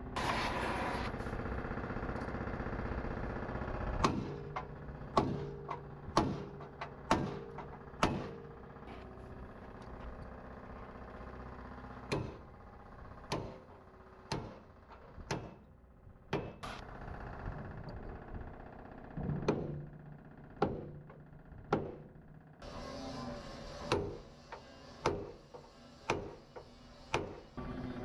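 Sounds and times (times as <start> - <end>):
sharp knocks on metal: 4.0 - 8.4, 12.1 - 12.4, 13.3 - 13.6, 14.3 - 14.6, 15.2 - 15.6, 16.3 - 16.7, 19.2 - 19.9, 20.6 - 22.1, 25.0 - 27.4.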